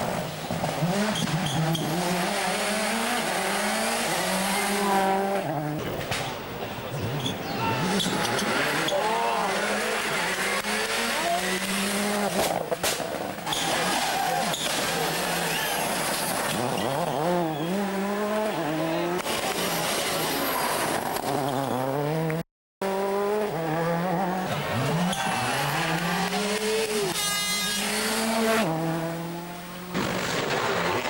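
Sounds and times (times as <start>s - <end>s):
rally car engine revving hard: 0.6s - 5.8s, 7.8s - 29.9s.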